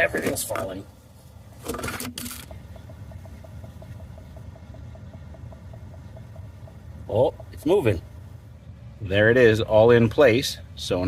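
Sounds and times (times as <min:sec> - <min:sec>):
steady low motor hum: 0:00.0 - 0:11.0
faint even ticking: 0:02.4 - 0:08.6.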